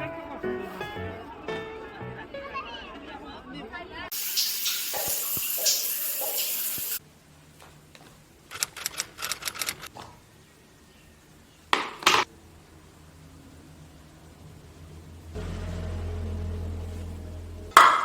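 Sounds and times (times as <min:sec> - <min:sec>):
steady hiss: 0:04.1 - 0:07.0
small clicks and rustles: 0:07.6 - 0:10.2.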